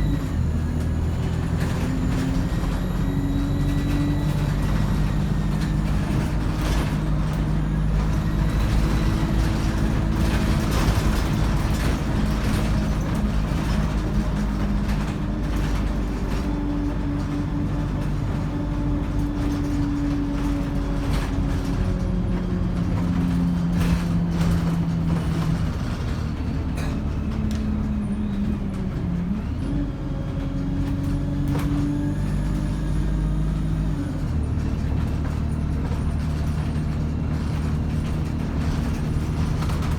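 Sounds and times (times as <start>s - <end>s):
faint turbo whine: 0.0s - 13.7s
bus diesel engine running: 0.0s - 39.9s.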